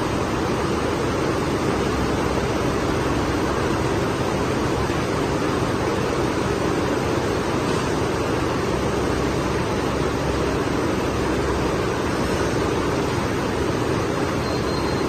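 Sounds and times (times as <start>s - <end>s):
furnace steady rushing noise: 0.0s - 15.0s.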